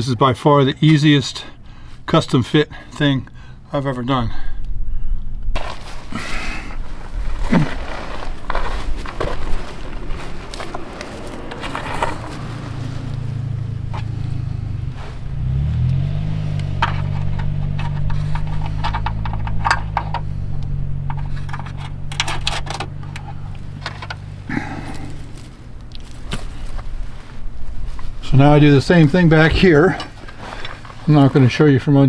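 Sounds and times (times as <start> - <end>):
low motor hum: 4.5 - 31.4
metal brackets clinking and scraping: 7.4 - 31.6.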